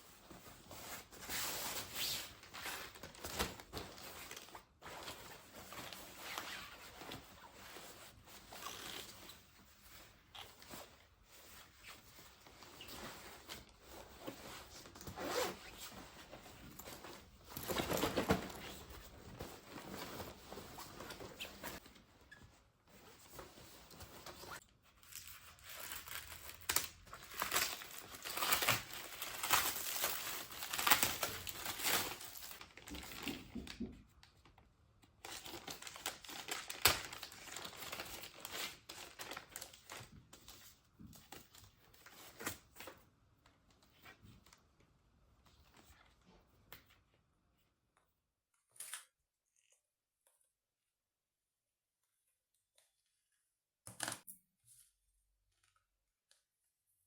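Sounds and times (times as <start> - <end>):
packaging crinkling and tearing: 25.0 - 33.3, 35.2 - 40.1.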